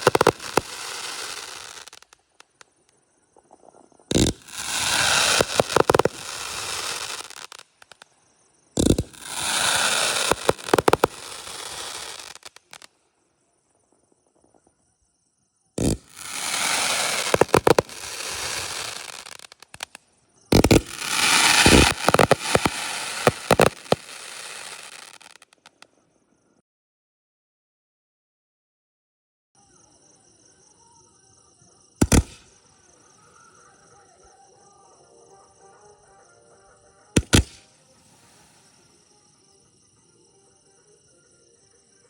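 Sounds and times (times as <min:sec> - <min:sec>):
firework bangs: 0:00.0 - 0:02.2, 0:04.1 - 0:08.0, 0:08.8 - 0:12.9, 0:15.8 - 0:25.5, 0:32.0 - 0:32.5, 0:37.2 - 0:37.6
firework hissing crackle: 0:00.0 - 0:02.6, 0:04.1 - 0:08.0, 0:08.8 - 0:12.9, 0:15.8 - 0:25.8, 0:32.0 - 0:32.6, 0:37.2 - 0:39.1.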